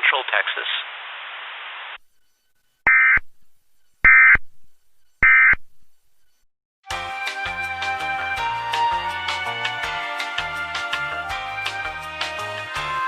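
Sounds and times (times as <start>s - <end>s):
music: 6.2s - 13.0s.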